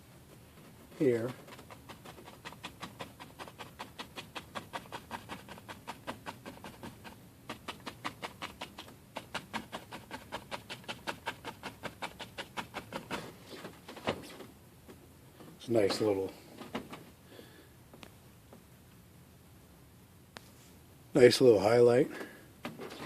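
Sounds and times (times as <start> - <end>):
paintbrush dabbing on canvas: 0.7 - 13.2.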